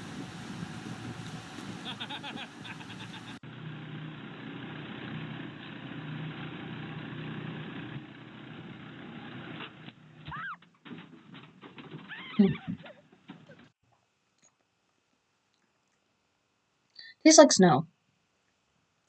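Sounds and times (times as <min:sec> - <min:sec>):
engine running: 0:00.0 - 0:13.7.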